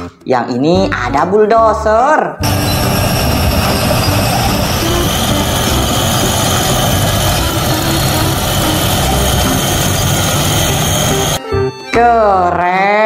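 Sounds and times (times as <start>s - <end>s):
bulldozer diesel engine rumbling: 2.4s - 11.4s.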